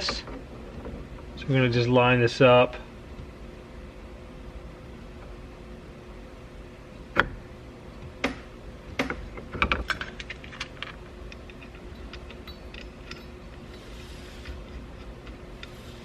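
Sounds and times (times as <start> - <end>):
metal tools clicking and clinking: 9.6 - 15.8.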